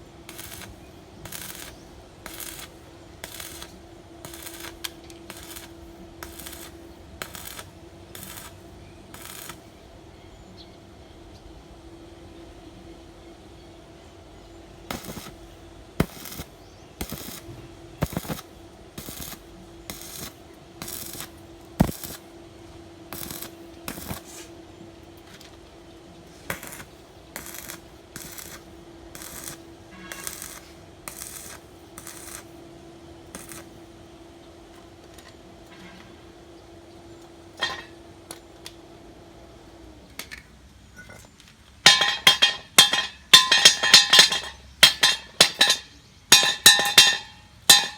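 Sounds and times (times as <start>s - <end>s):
loud metal clinks and knocks: 41.9s - 47.9s.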